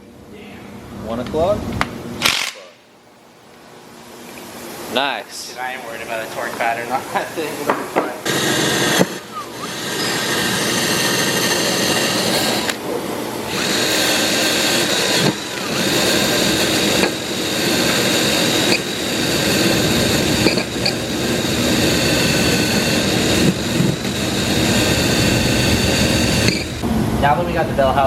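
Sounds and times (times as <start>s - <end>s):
power tool running in bursts: 8.2s - 12.8s, 13.4s - 26.8s.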